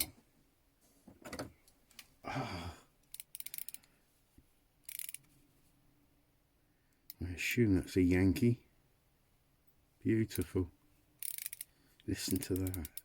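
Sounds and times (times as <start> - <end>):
small metallic clicks: 3.0 - 4.0, 4.8 - 5.3, 11.2 - 13.0.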